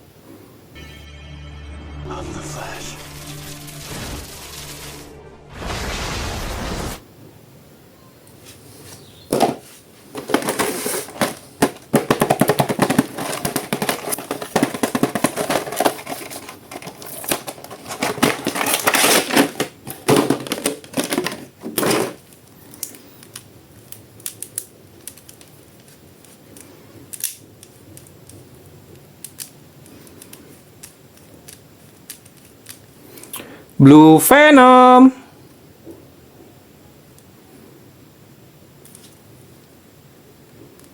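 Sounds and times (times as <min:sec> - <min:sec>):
plastic packaging crinkling: 0:09.6 - 0:28.5
plastic toy clicks: 0:27.1 - 0:28.4, 0:29.2 - 0:32.8.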